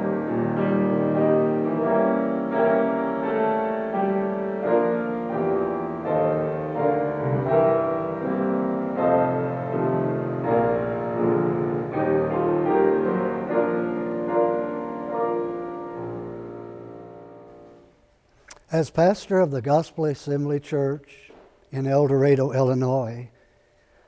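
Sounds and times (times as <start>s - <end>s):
slow solo piano piece: 0.0s - 18.0s.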